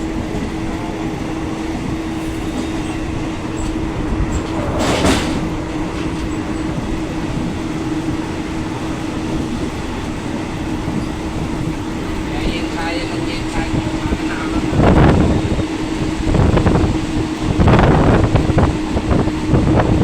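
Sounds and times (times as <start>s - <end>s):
train wheels rumbling on track: 0.0s - 20.0s.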